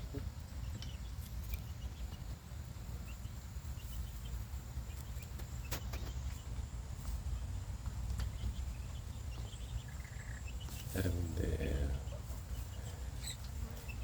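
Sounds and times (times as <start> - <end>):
chickens peeping: 0.0 - 14.0
chickens pecking clicks: 4.9 - 11.0.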